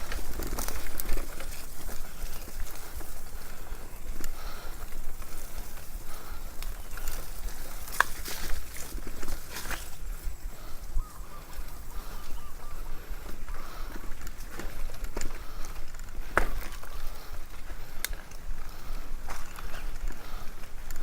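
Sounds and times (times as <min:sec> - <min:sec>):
bike clicks and rattles: 0:00.0 - 0:21.0
bike rolling over dirt trail: 0:00.0 - 0:21.0.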